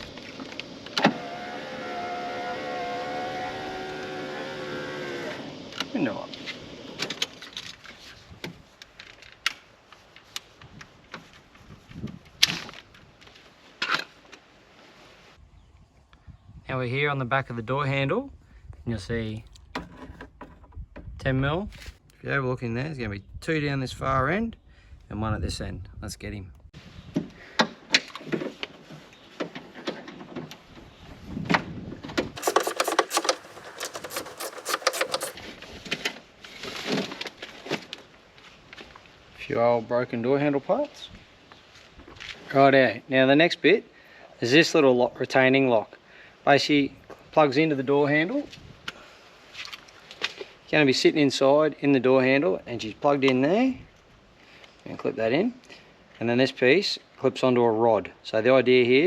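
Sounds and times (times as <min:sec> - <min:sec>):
clicks and knocks of tools: 0:32.4 - 0:36.2.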